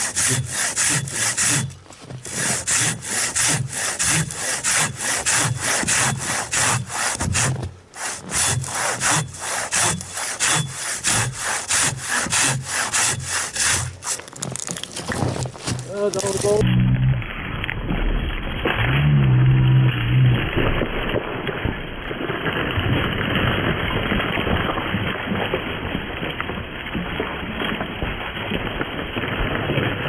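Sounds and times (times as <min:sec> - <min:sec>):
handsaw cutting wood: 0:00.0 - 0:14.5.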